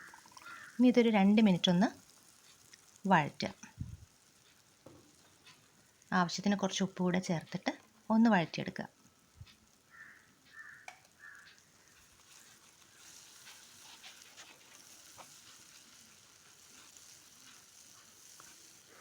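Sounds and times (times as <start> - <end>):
paste sizzling in oil: 0.0 - 19.0
spoon stirring and scraping: 11.9 - 19.0.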